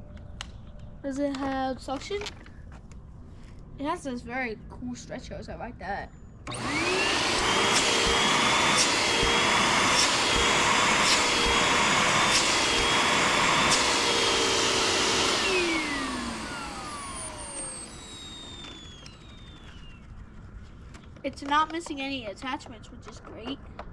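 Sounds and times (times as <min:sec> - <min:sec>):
vacuum motor winding down: 0:06.5 - 0:20.2
vacuum cleaner whining: 0:06.5 - 0:20.3.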